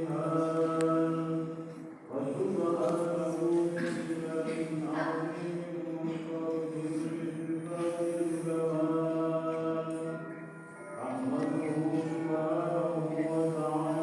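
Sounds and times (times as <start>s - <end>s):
person chanting in held notes: 0.0s - 10.1s.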